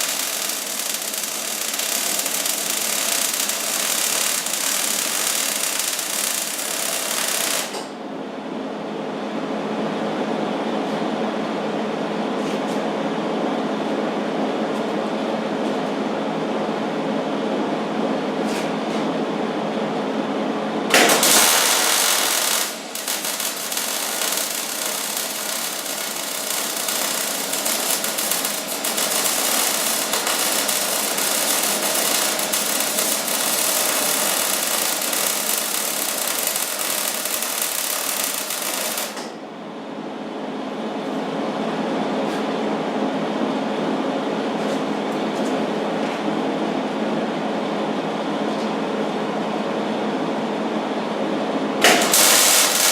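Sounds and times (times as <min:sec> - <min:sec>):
welder hum: 0:00.0 - 0:08.0, 0:20.9 - 0:39.4, 0:51.8 - 0:52.9
welding arc crackling and sizzling: 0:00.0 - 0:08.0, 0:20.9 - 0:39.4, 0:51.8 - 0:52.9.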